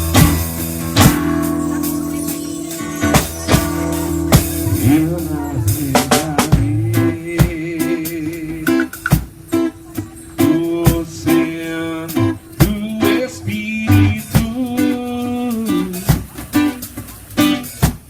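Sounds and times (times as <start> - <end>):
drum kit rhythm: 0.0 - 7.2
wavering melody line: 0.5 - 7.8.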